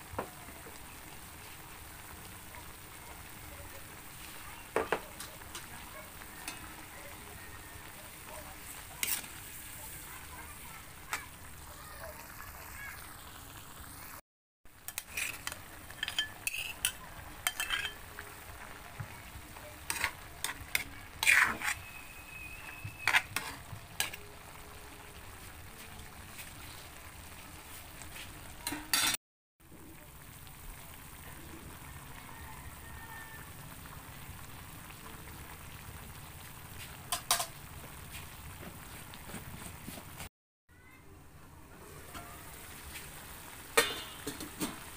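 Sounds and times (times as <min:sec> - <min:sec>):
food sizzling in a frying pan: 0:00.0 - 0:44.9
utensil scraping a pan: 0:08.6 - 0:10.0, 0:14.9 - 0:18.2, 0:19.8 - 0:24.2, 0:43.8 - 0:44.9.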